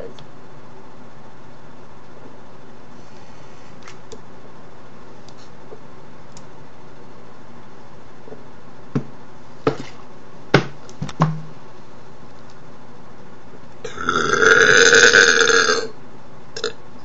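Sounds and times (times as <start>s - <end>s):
person belching: 13.8s - 15.9s.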